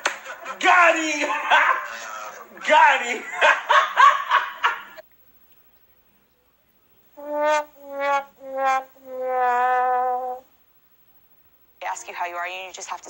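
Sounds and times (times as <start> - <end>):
descending trombone notes: 7.2 - 10.5.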